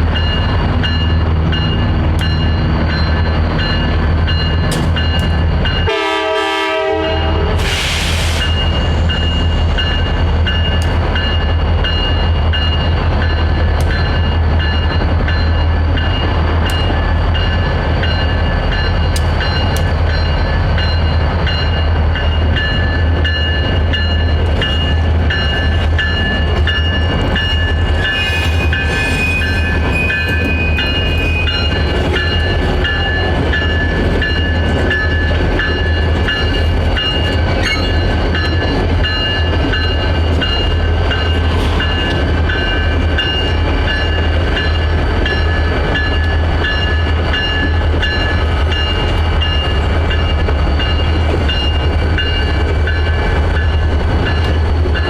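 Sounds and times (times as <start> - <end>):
train rumbling hum: 0.0 - 55.0
train wheel clicks: 4.5 - 5.5, 9.8 - 11.5, 16.0 - 17.6, 18.3 - 20.4
high squealing tones: 28.0 - 31.9.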